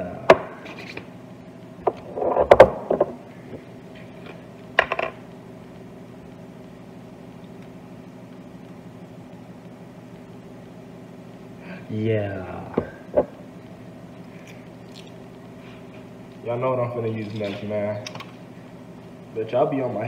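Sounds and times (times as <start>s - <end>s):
low mechanical hum: 0.0s - 20.0s.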